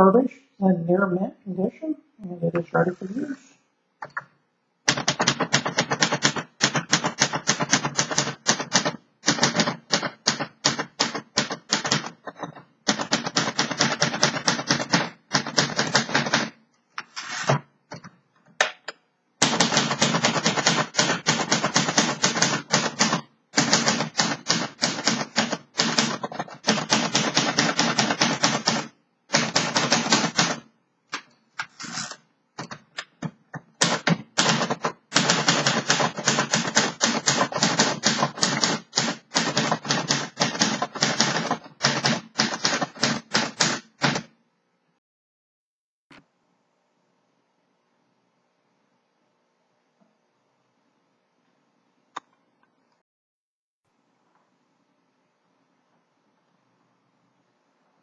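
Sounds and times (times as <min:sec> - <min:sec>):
manual typewriter typing: 0:04.9 - 0:16.6, 0:19.4 - 0:30.7, 0:33.8 - 0:44.3.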